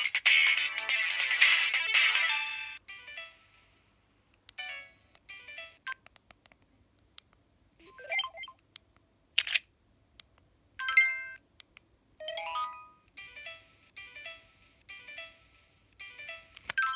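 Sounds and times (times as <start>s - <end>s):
mobile phone alert tones: 13.2s - 16.9s.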